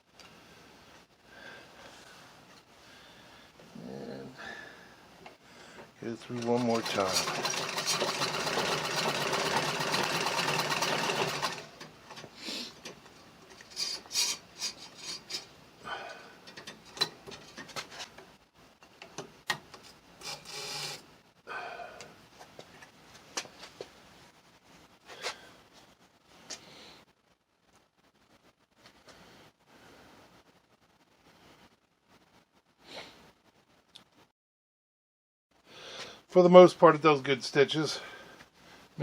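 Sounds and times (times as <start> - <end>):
treadle sewing machine rattling: 6.3 - 12.2, 20.2 - 21.0.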